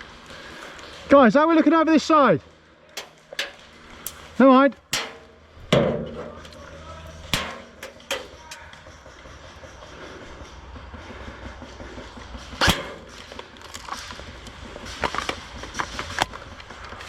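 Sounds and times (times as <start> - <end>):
airsoft gun shots: 12.6 - 13.2.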